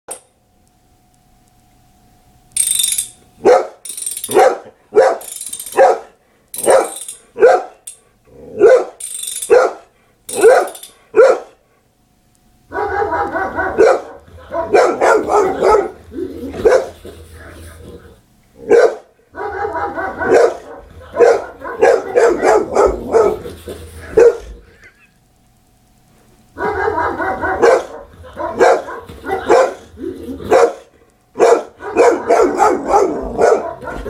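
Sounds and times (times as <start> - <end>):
dog barking excitedly: 3.4 - 7.8, 8.5 - 11.6, 12.7 - 17.2, 18.6 - 24.6, 26.6 - 34.0.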